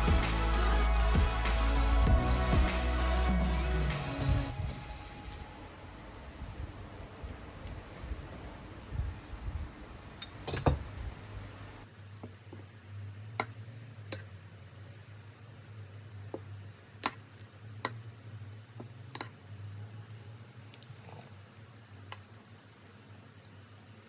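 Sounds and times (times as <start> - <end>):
rain-like hiss: 0.0 - 11.9
kitchenware clinking and tapping: 10.2 - 11.0, 18.8 - 19.4.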